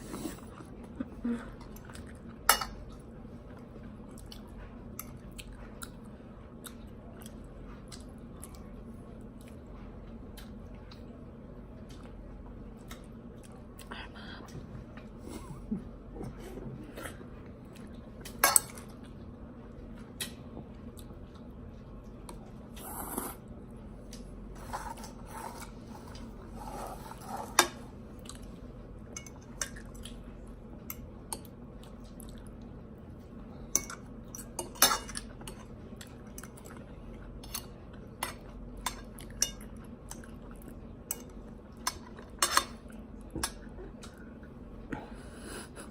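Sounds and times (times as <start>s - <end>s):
faint chewing: 0.0s - 45.9s
utensils clinking against dishes: 33.7s - 35.7s, 41.9s - 42.8s.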